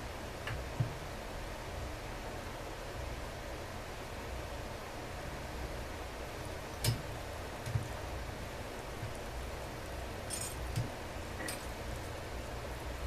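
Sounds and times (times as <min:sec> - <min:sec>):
steady background hiss: 0:00.0 - 0:13.0
clinks of tools and parts: 0:10.3 - 0:10.8.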